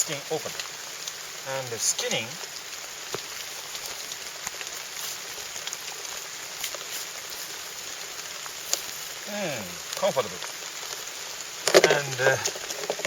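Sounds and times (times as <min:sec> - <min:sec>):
steady hissing noise: 0:00.0 - 0:13.0.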